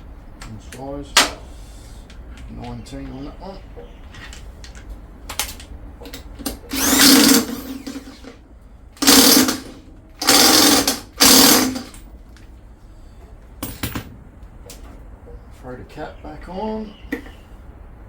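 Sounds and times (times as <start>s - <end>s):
impact wrench hammering: 6.7s - 8.3s, 9.0s - 12.0s.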